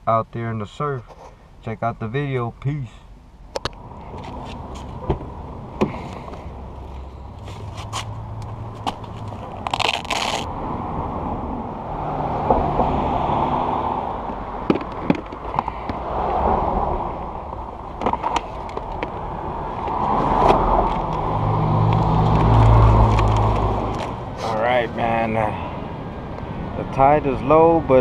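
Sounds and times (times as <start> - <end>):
wind rumble on microphone: 8.1 - 24.3.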